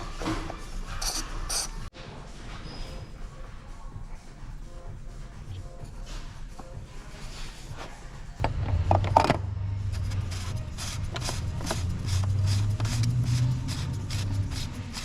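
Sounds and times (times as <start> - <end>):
low steady hum: 3.7 - 15.0.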